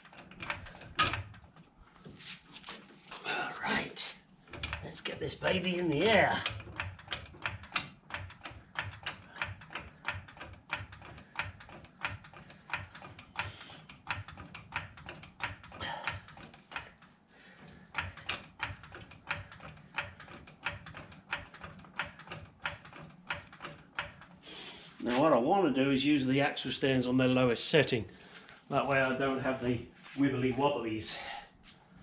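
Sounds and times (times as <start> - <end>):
floor jack pumping clicks: 0.0 - 2.9, 4.4 - 25.3.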